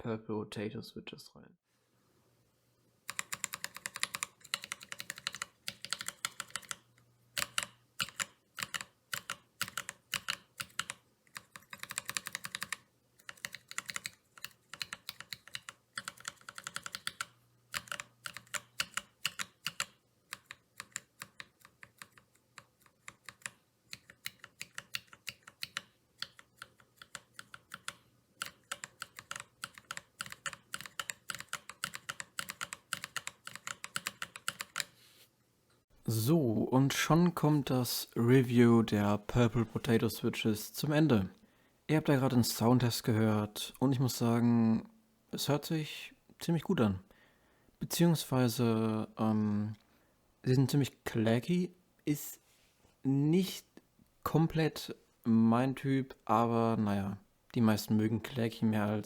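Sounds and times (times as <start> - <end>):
mechanical keyboard typing: 3.1 - 35.0.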